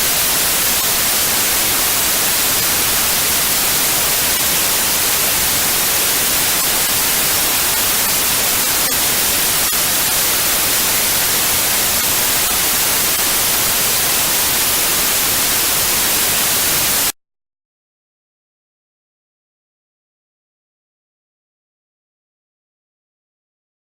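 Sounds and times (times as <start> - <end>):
white noise hiss: 0.0 - 17.1.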